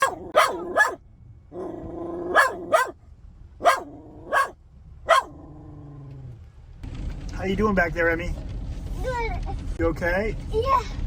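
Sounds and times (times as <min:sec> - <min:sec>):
dog barking: 0:00.0 - 0:01.0, 0:01.6 - 0:03.0, 0:03.6 - 0:05.4
dog whining: 0:00.0 - 0:01.0, 0:01.6 - 0:02.9, 0:03.6 - 0:04.5, 0:05.1 - 0:06.2.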